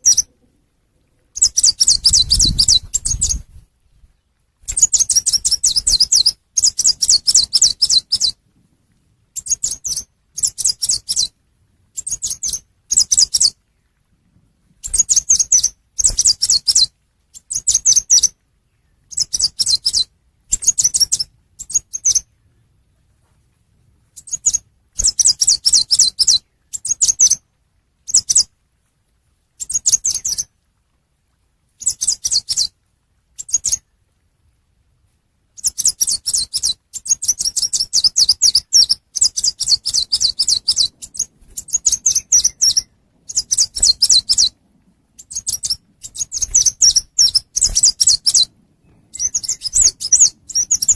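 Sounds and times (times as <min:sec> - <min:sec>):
songbird chips: 0:04.6 - 0:08.4, 0:31.8 - 0:32.8, 0:35.6 - 0:50.9.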